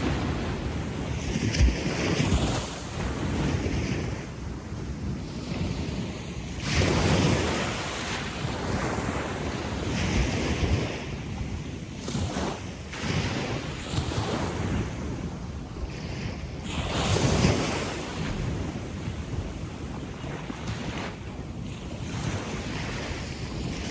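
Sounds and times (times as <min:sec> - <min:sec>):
sea waves washing on beach: 0:00.0 - 0:23.9
wind on microphone: 0:00.0 - 0:23.9.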